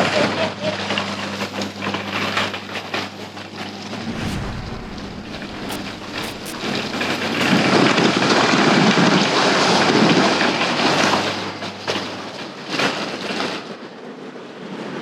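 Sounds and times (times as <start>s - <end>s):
rush of noise: 3.8s - 7.7s.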